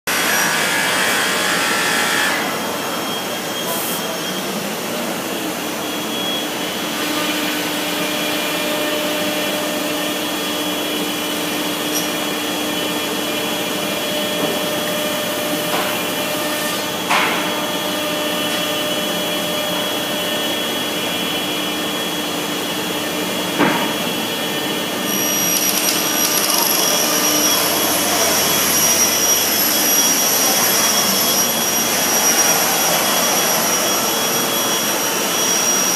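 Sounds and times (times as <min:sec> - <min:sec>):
router machine rushing noise: 0:00.1 - 0:03.5, 0:17.7 - 0:35.9.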